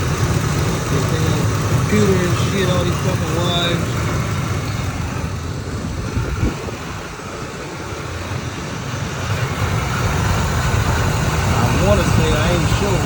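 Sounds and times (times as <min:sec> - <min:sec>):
low engine knock: 0:00.0 - 0:07.0
car engine idling: 0:00.0 - 0:13.0.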